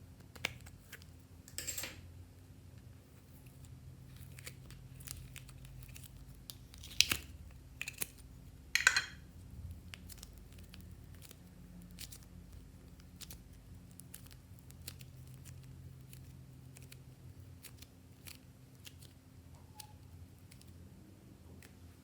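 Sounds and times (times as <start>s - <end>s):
low steady hum: 0.0s - 22.0s
slime squishing with sticky pops: 3.5s - 8.6s, 9.4s - 20.8s.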